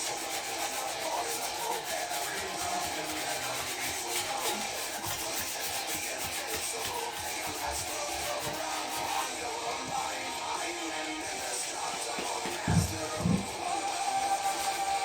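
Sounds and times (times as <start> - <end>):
sandpaper scratching on metal frame: 0.0 - 9.7, 12.1 - 15.0.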